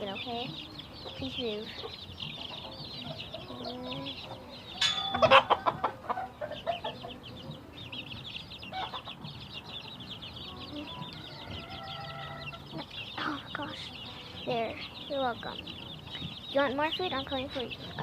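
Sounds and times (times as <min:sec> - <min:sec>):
chickens clucking: 0:00.0 - 0:18.0
chicks peeping: 0:00.0 - 0:18.0
sharp clattering and cries: 0:04.8 - 0:06.2.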